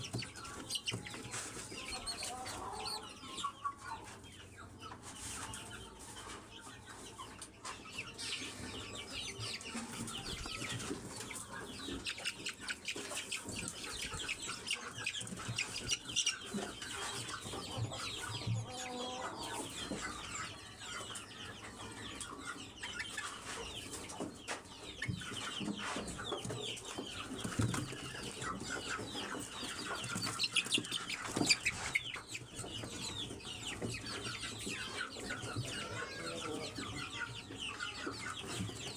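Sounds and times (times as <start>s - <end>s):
chickens clucking: 0.0s - 38.9s
chicks cheeping: 0.0s - 38.9s.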